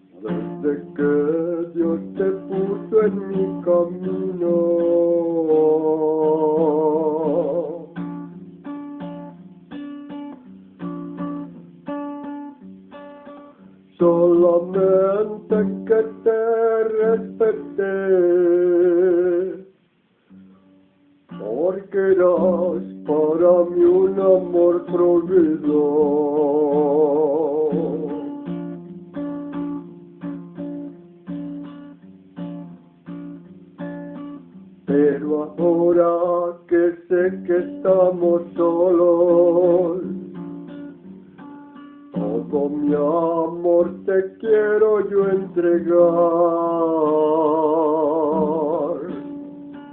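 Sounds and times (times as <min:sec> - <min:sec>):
person singing with vibrato: 0:00.0 - 0:08.3, 0:13.9 - 0:19.8, 0:21.3 - 0:28.4, 0:34.8 - 0:40.4, 0:42.1 - 0:49.5
guitar strummed chords: 0:00.0 - 0:49.9.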